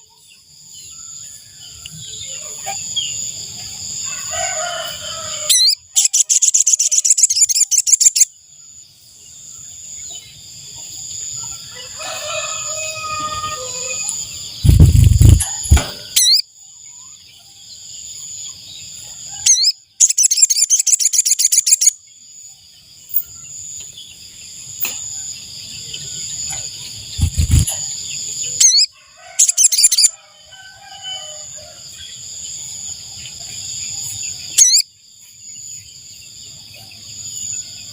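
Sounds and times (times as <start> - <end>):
bird trilling calls: 5.4 - 8.3, 13.6 - 16.4, 19.5 - 21.9, 27.2 - 28.0, 28.6 - 30.1, 34.6 - 34.8
loud low thumps: 14.6 - 16.0.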